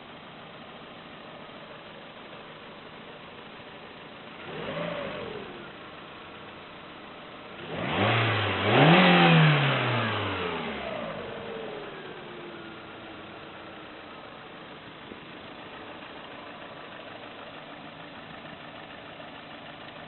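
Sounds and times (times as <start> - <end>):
car engine idling and revving: 0.0 - 20.0
engine knocking: 12.2 - 20.0.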